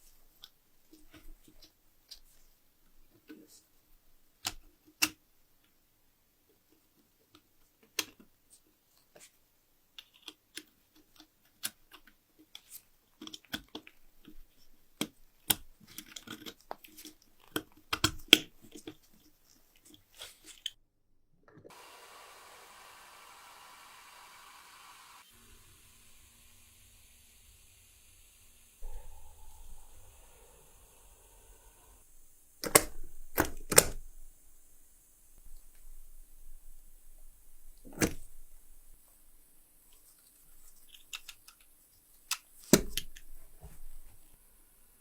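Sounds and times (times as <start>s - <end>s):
steady hiss: 21.7s - 45.0s.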